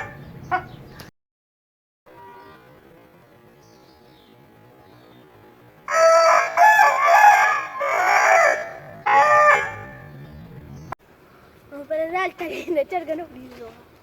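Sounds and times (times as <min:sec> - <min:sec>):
rooster crowing: 0:05.9 - 0:10.1.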